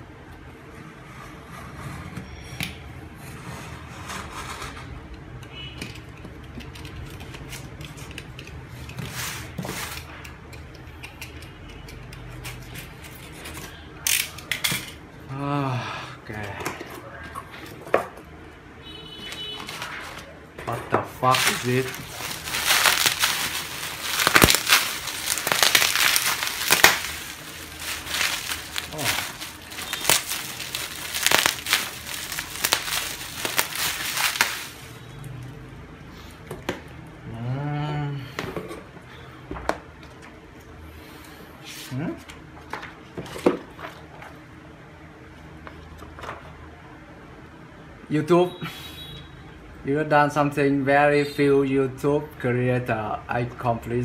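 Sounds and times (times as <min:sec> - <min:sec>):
paper rustling: 0:21.2 - 0:34.9
packaging crinkling: 0:21.2 - 0:35.0.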